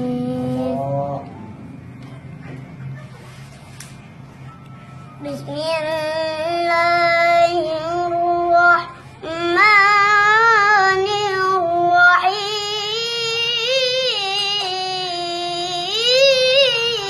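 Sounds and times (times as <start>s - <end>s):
girl reciting in melodic chant: 0.0s - 1.2s, 5.2s - 17.0s.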